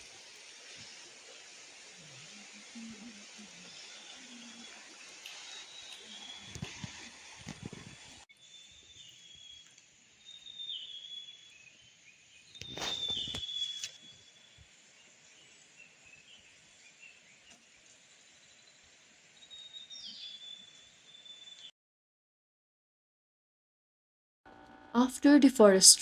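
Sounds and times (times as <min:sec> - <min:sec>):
faint steady hiss: 0:00.0 - 0:21.7
birds whistling: 0:02.2 - 0:07.1, 0:10.3 - 0:14.5.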